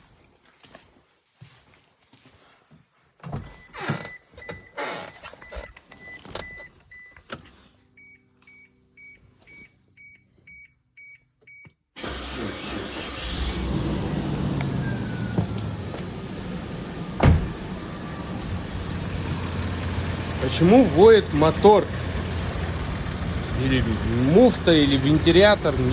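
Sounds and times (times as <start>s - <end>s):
car engine starting and running: 12.0s - 25.9s.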